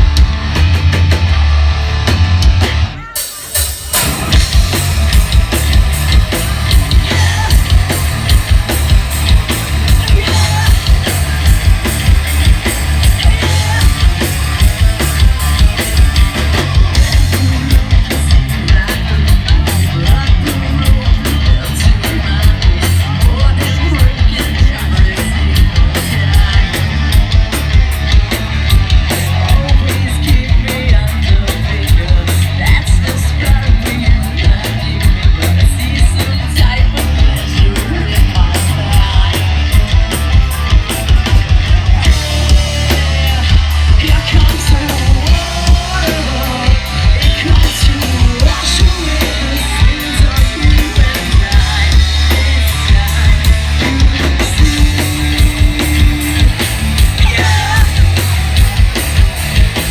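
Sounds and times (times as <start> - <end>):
driving drum beat: 0.0 - 59.9
hard rock band playing live: 0.0 - 59.9.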